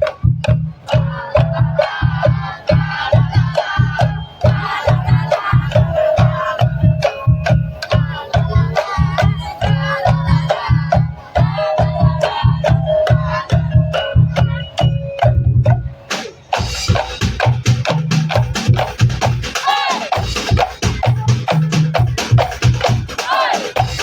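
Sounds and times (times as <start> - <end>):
wavering melody: 0.0 - 16.8
deep drums beating: 0.0 - 24.0.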